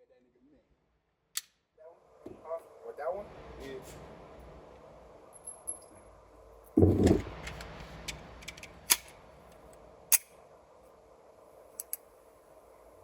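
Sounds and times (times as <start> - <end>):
dull heavy thump: 6.8 - 7.4.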